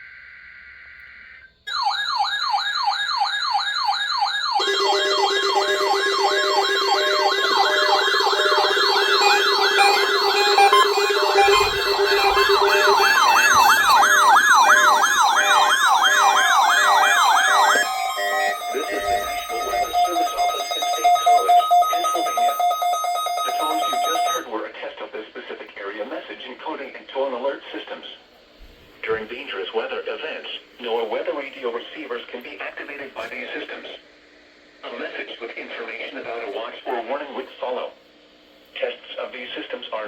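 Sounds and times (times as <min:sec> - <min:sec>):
electronic siren yelping: 0:00.0 - 0:24.5
lower fluttering siren tone: 0:01.7 - 0:24.4
repeating beeps: 0:04.6 - 0:24.4.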